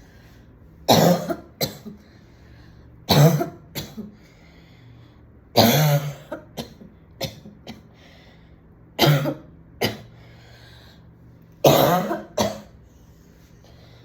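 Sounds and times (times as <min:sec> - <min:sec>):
woman coughing: 0:00.9 - 0:02.0, 0:03.1 - 0:04.2, 0:05.6 - 0:07.9, 0:09.0 - 0:10.1, 0:11.6 - 0:12.8.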